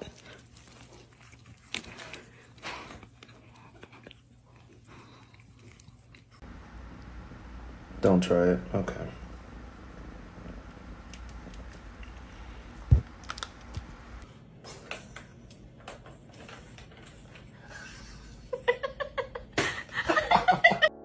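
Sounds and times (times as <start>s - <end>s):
clicking and tapping: 10.5s - 14.2s.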